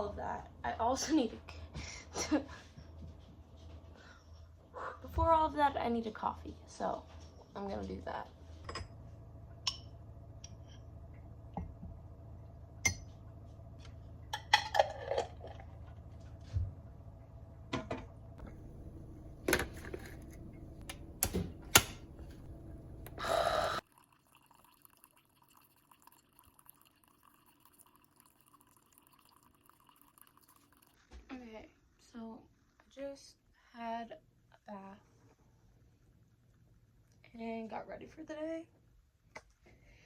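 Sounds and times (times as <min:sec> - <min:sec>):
low machine hum: 0:00.0 - 0:23.8
liquid pouring: 0:23.8 - 0:31.0.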